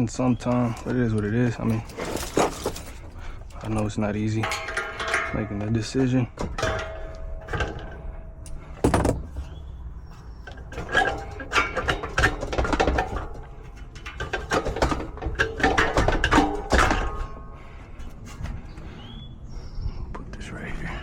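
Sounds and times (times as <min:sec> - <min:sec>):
metal tools clanking: 0:00.0 - 0:18.7
short metallic rings: 0:03.8 - 0:09.2.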